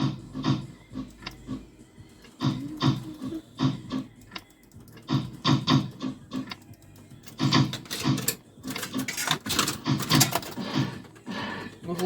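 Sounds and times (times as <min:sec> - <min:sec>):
arcade coin machine clatter: 0:07.2 - 0:12.0.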